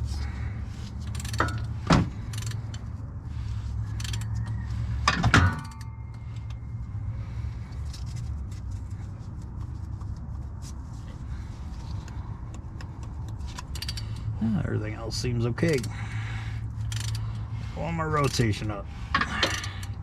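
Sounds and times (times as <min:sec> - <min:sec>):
steady low hum: 0:00.0 - 0:20.0
sharp metal clanks: 0:05.1 - 0:06.2
small irregular clicks: 0:16.8 - 0:17.5.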